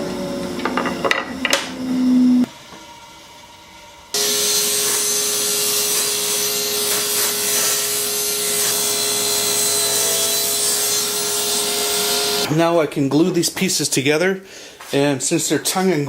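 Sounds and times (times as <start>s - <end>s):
power saw cutting wood: 1.4s - 12.5s.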